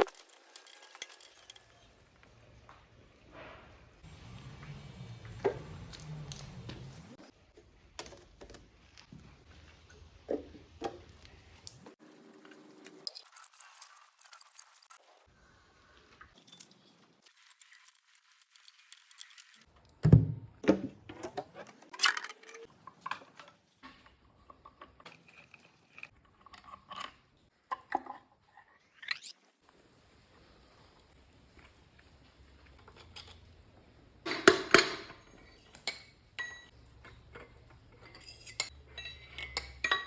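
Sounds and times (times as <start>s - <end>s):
metal tools clinking and knocking: 0.0s - 2.0s, 34.3s - 40.0s.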